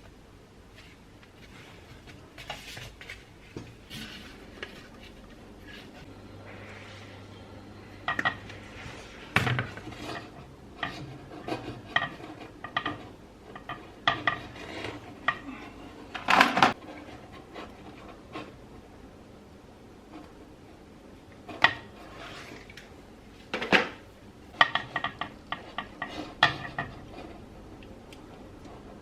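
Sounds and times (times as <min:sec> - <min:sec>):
low hum: 0:04.2 - 0:11.4.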